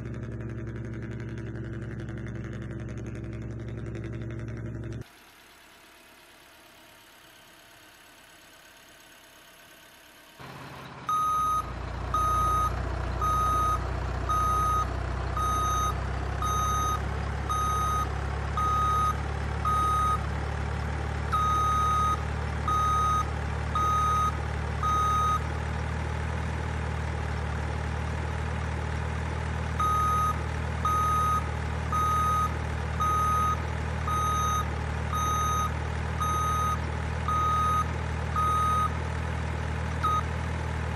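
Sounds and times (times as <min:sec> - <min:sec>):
simulated truck engine: 0:00.0 - 0:40.9
reversing beeper: 0:11.0 - 0:20.2, 0:21.3 - 0:25.4, 0:29.8 - 0:38.9.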